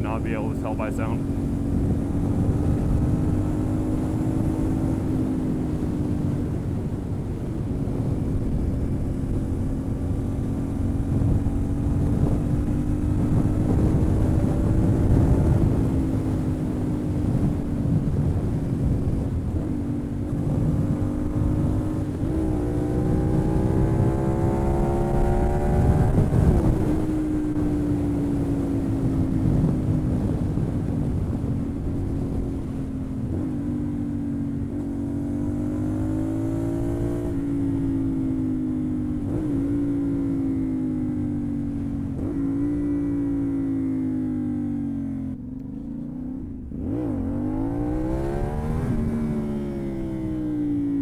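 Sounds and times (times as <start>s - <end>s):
motorcycle engine revving: 20.5s - 29.3s, 33.3s - 51.0s.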